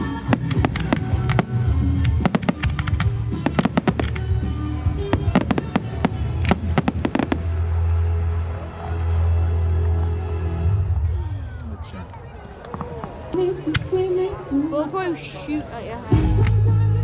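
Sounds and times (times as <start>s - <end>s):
fireworks bangs and crackles: 0.0s - 7.8s
background music: 0.0s - 11.4s, 13.4s - 17.0s.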